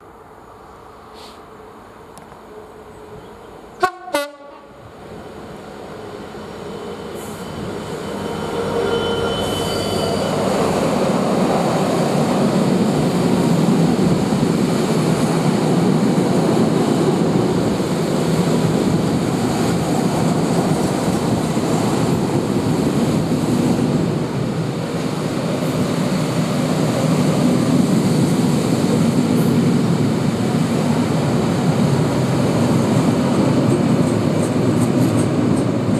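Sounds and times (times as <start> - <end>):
locomotive horn: 3.8 - 4.8.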